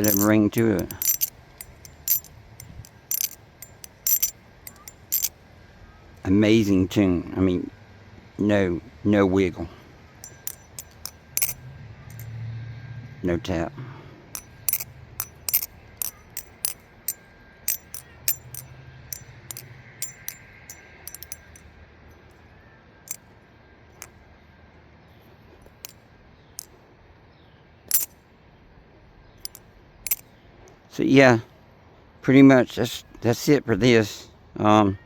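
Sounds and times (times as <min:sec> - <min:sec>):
metallic clacks of knife handles: 0:00.0 - 0:05.3, 0:10.2 - 0:12.3, 0:14.4 - 0:20.4, 0:21.1 - 0:21.6, 0:29.5 - 0:30.2.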